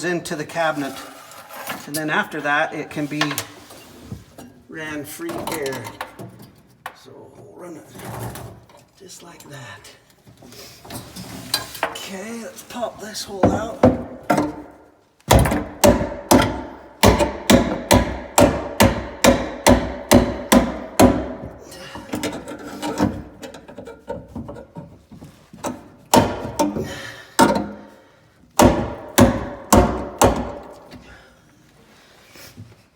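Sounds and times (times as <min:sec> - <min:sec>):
hammer striking metal box: 0:15.3 - 0:21.4, 0:28.6 - 0:30.8.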